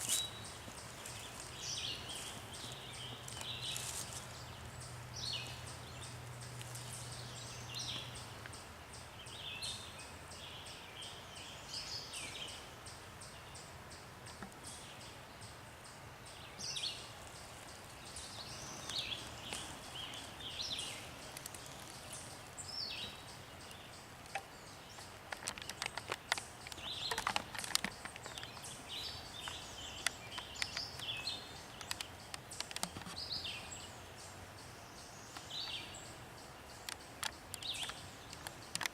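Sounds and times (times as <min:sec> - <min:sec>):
faint steady hiss: 0:00.0 - 0:38.9
songbirds chirping: 0:00.0 - 0:38.9
sharp crackling clicks: 0:18.8 - 0:22.3, 0:24.2 - 0:33.3, 0:36.7 - 0:38.9.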